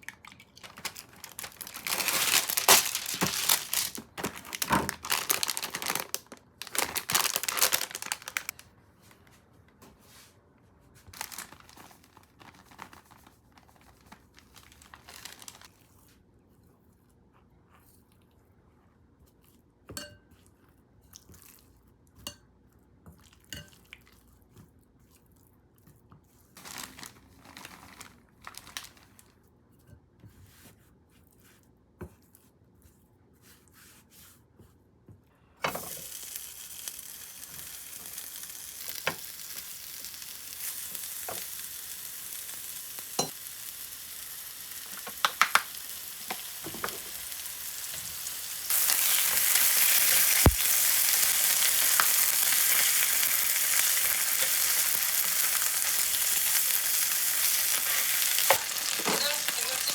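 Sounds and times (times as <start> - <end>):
food sizzling in hot oil: 35.7 - 59.9.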